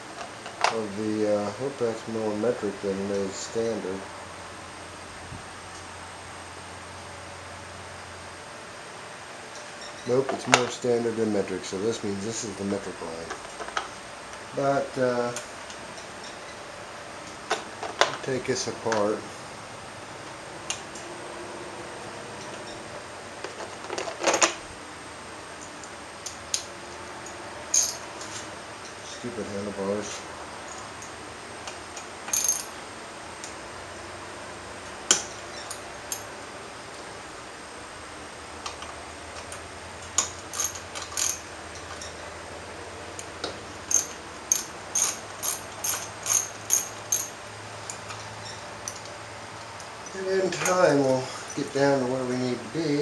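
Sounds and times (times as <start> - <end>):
metallic tool clicks: 26.2 - 28.0, 32.3 - 32.7, 43.8 - 47.3.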